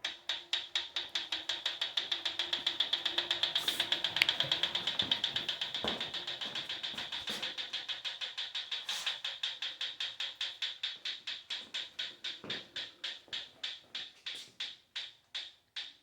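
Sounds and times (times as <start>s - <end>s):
exercise bike ticking: 0.0s - 16.0s.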